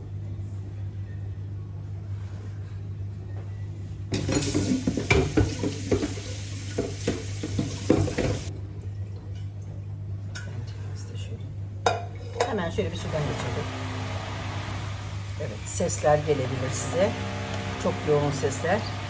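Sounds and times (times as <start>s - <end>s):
kitchen tap running: 4.1s - 8.5s, 12.2s - 19.0s
pot clanking in sink: 4.1s - 8.5s.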